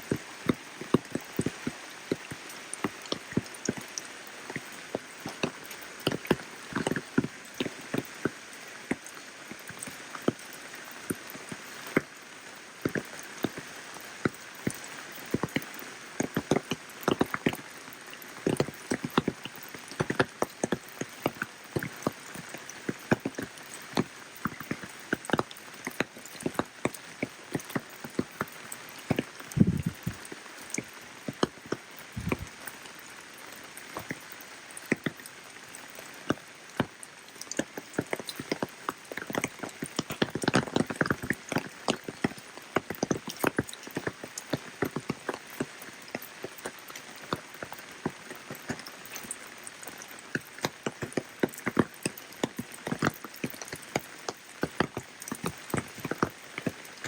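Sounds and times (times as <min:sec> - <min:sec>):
raindrops tapping: 0:00.0 - 0:57.0
rain hissing: 0:27.1 - 0:34.8.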